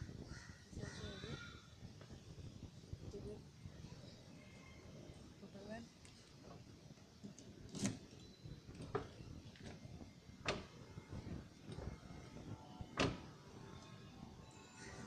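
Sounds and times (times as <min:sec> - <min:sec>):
car door latch clicks and clunks: 0:13.0 - 0:13.3.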